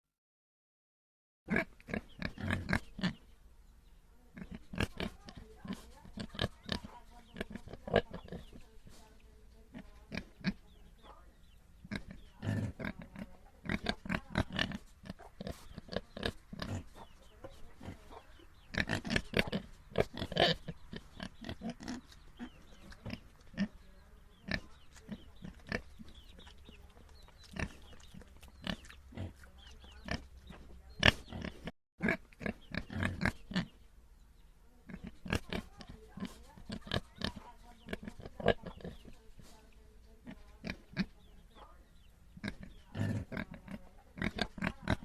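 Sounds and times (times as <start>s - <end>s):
pigs grunting: 1.5s - 3.2s, 4.3s - 8.6s, 11.9s - 33.8s, 34.9s - 39.1s, 42.4s - 45.0s.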